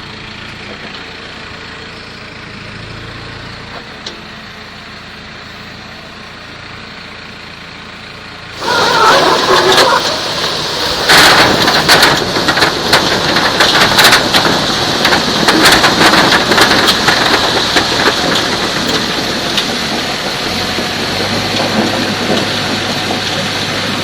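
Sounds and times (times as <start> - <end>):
high machine whine: 8.6 - 14.8
potato harvester rattling: 8.6 - 24.0.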